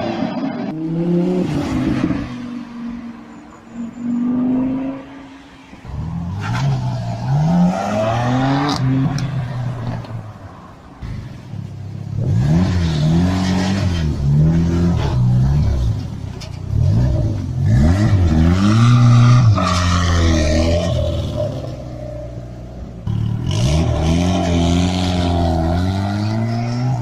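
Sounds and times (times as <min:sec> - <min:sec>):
car engine revving: 0:11.0 - 0:27.0.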